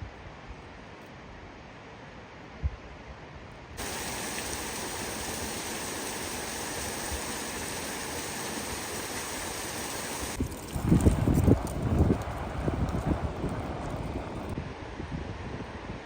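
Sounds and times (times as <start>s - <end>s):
rushing water: 3.8s - 14.6s.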